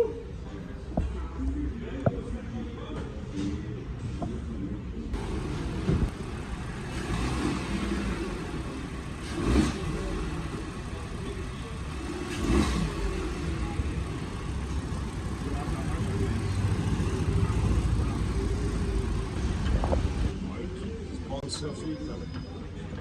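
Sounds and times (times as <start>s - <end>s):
car engine and road noise: 0.0s - 21.4s
loud thumps: 5.2s - 6.2s.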